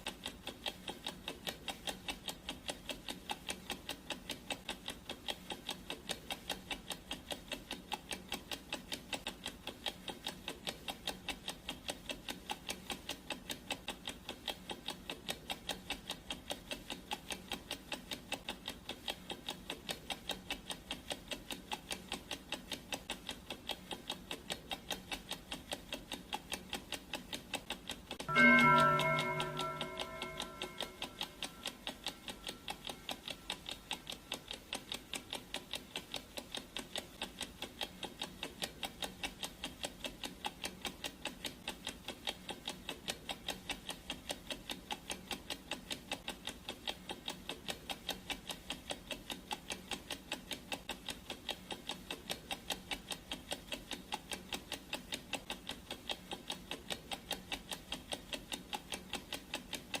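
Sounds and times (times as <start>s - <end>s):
clock ticking: 0.0s - 60.0s
ringing tone: 28.3s - 32.6s.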